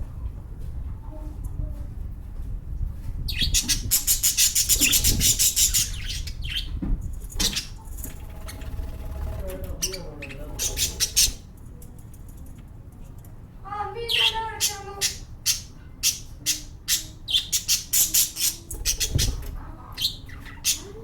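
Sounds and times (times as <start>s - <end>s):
lovebirds chirping: 3.2s - 11.5s, 14.0s - 21.0s.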